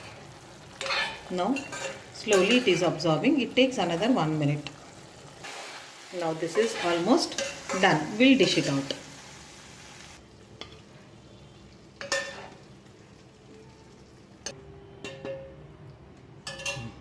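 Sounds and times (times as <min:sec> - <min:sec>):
chicken sizzling in a pan: 0:00.0 - 0:14.3
spoon scraping and clinking on pan: 0:00.8 - 0:02.9, 0:06.5 - 0:08.6, 0:12.0 - 0:12.6, 0:16.4 - 0:17.0.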